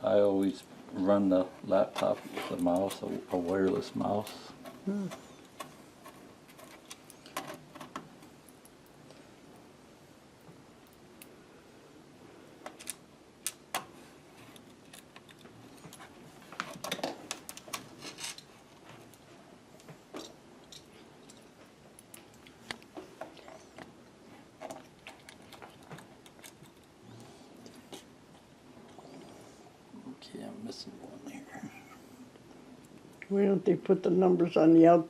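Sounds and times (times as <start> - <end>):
small parts clicking and rattling: 12.6 - 19.2.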